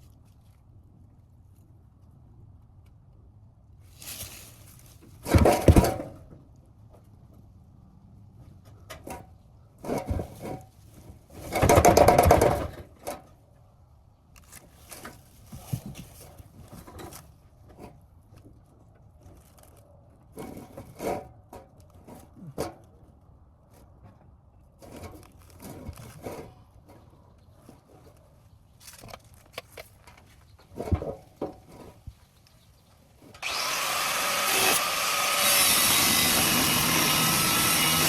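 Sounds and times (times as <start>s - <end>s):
metallic clanks and scrapes: 20.3s - 22.9s.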